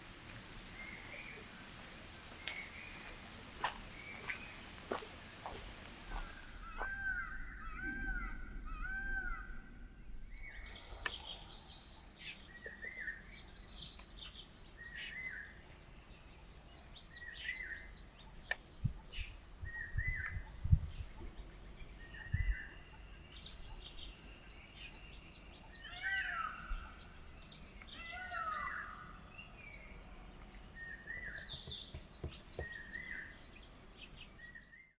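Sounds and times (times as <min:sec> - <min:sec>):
steady high-pitched whine: 0:00.0 - 0:31.5
small birds chirping: 0:00.6 - 0:35.0
crows cawing: 0:06.3 - 0:09.6.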